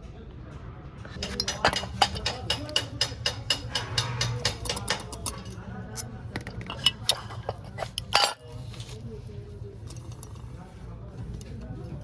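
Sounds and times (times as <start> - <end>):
metal tools clicking and clinking: 1.1 - 9.0, 9.9 - 10.5.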